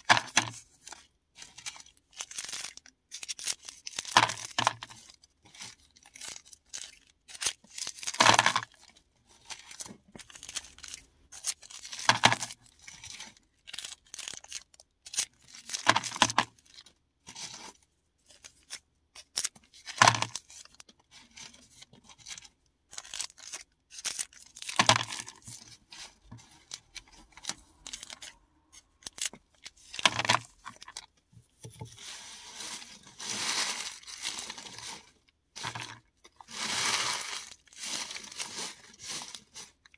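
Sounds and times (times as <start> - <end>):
crinkling: 0.0 - 39.9
mothballs crunching by hand: 32.6 - 35.0, 35.6 - 39.8.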